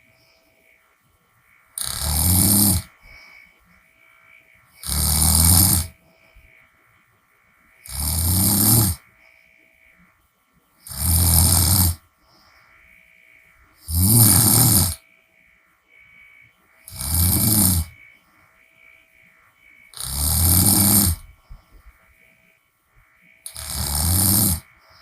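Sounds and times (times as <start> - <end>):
quiet breathing: 0.0 - 25.0
person snoring: 1.8 - 3.2, 4.8 - 6.0, 7.8 - 9.0, 10.8 - 12.0, 13.8 - 15.0, 16.9 - 18.0, 19.9 - 21.3, 23.4 - 24.7.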